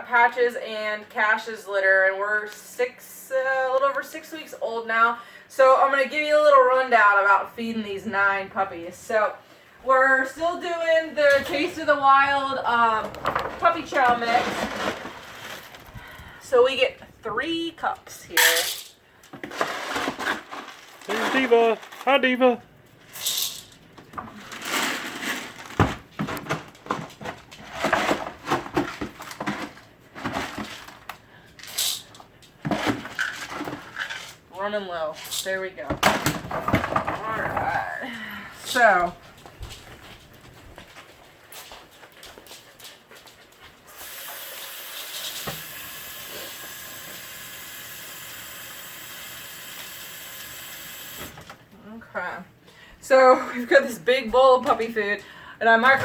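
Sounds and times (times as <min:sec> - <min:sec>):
water running from a tap: 0:43.9 - 0:51.3.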